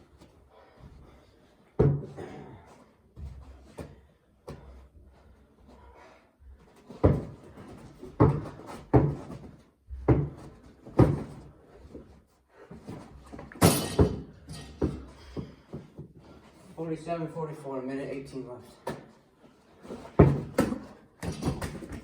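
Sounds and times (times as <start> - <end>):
basketball dribbling on hard floor: 8.0 - 11.4, 20.2 - 22.0.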